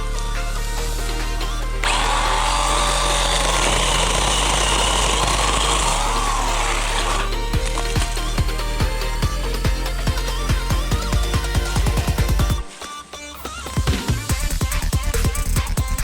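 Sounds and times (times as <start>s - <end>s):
electronic background music: 0.0s - 16.0s
electric chainsaw cutting wood: 1.8s - 8.8s.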